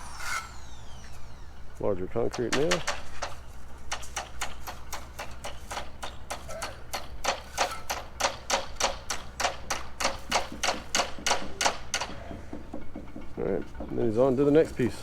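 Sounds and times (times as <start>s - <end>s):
hammer striking nail: 2.3s - 13.9s.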